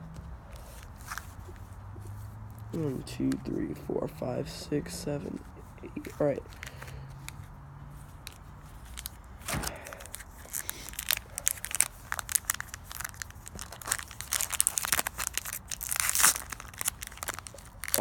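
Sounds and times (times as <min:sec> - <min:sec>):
wrapper crinkling and tearing: 0:06.0 - 0:18.0.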